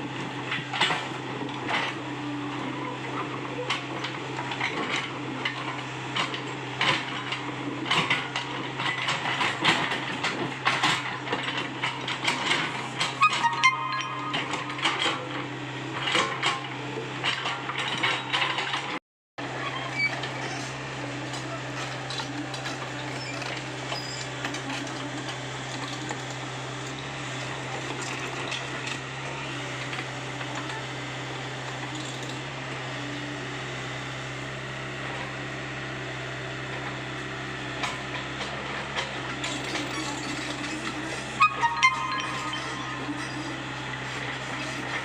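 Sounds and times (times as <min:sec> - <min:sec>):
excavator diesel engine running: 0:00.1 - 0:45.0.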